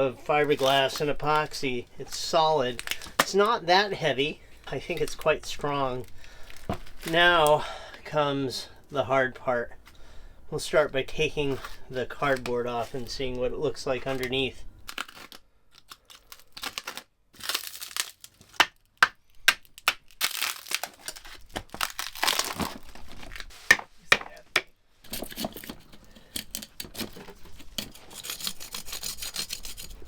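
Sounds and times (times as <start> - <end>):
plastic lining crinkling: 2.1 - 3.6, 6.0 - 7.6, 14.0 - 19.0, 19.6 - 23.7
cardboard tearing: 14.9 - 18.6, 20.1 - 23.7.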